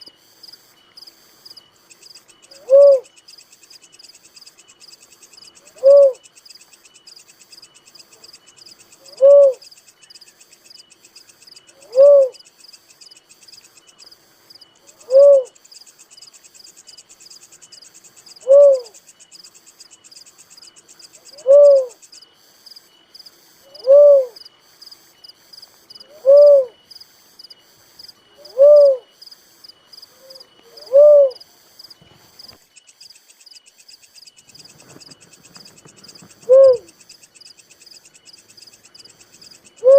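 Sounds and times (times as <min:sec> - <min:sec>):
crickets chirping: 0:00.0 - 0:39.9
dove hooting: 0:02.4 - 0:03.2, 0:05.4 - 0:06.4, 0:08.9 - 0:09.7, 0:11.6 - 0:12.5, 0:14.8 - 0:15.6, 0:18.3 - 0:19.0, 0:21.2 - 0:22.0, 0:23.5 - 0:24.5, 0:25.9 - 0:26.9, 0:28.3 - 0:29.2, 0:30.0 - 0:31.5, 0:34.5 - 0:37.0, 0:39.6 - 0:39.9.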